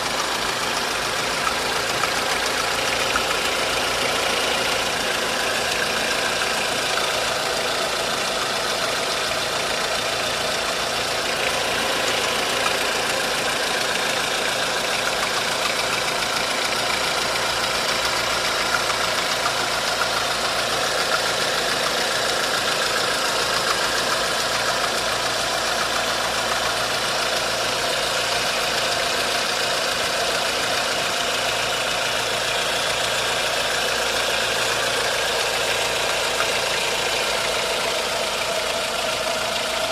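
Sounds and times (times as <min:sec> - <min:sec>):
car engine idling: 0:00.0 - 0:39.9.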